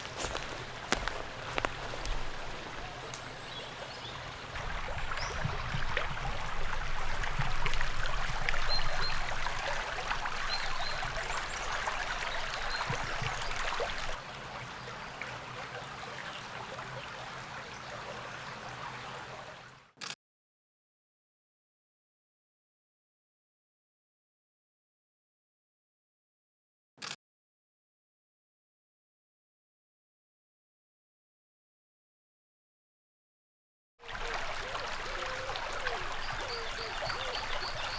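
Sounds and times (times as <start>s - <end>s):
stream trickling: 0.0s - 19.9s, 34.0s - 37.9s.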